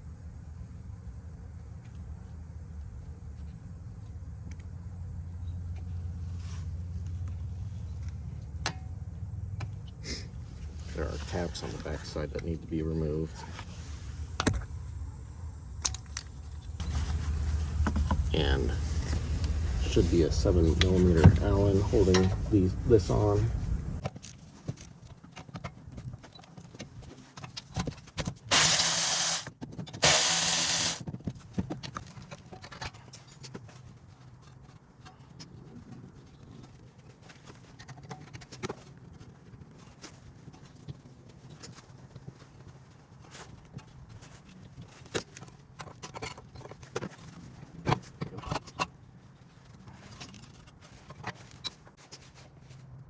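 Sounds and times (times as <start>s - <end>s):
low steady hum: 0.0s - 24.0s
pneumatic tool hissing air: 28.5s - 31.0s.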